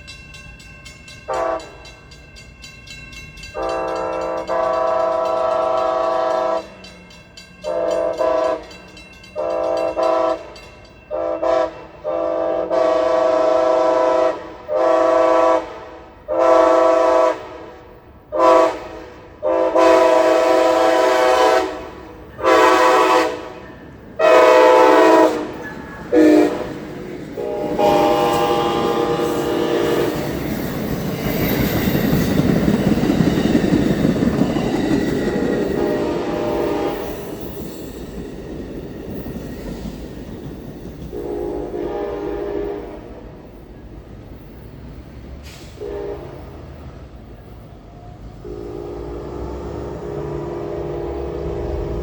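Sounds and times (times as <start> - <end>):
locomotive air horn blasts: 1.3 - 1.8, 3.6 - 6.8, 7.6 - 8.7, 9.4 - 30.2, 35.6 - 37.2, 41.1 - 43.3, 45.4 - 46.8, 48.4 - 52.0.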